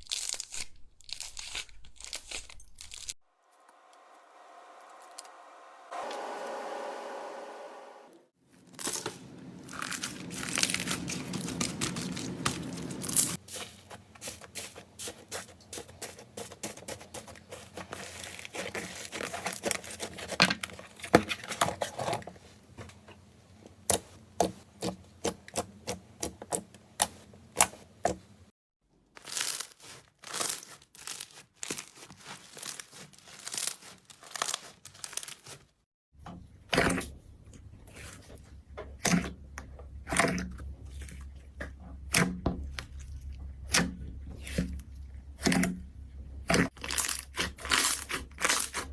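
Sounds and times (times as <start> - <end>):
low hum: 3.4 - 13.4
slime crackling and popping: 29.2 - 35.6, 46.6 - 48.8.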